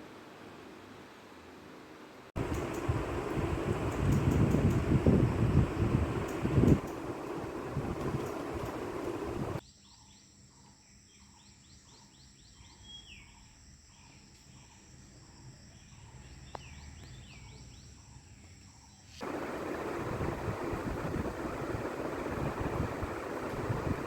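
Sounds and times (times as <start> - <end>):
loud wind-like noise: 2.4 - 9.6, 19.2 - 24.0
high insect trill: 19.2 - 24.0.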